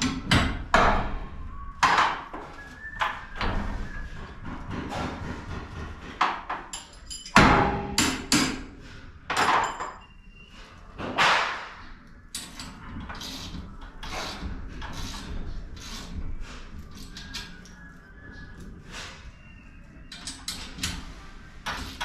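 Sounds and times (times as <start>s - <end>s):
metal tools knocking and clanking: 6.2s - 8.6s, 9.3s - 10.1s.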